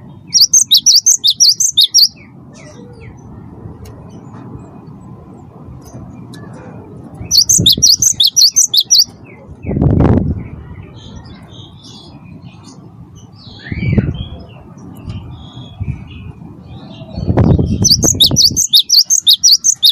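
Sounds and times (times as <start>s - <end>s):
bird chattering call: 0.4s - 2.8s, 7.3s - 9.1s, 17.8s - 19.9s
faint bird chirps: 7.3s - 9.1s, 17.0s - 19.9s.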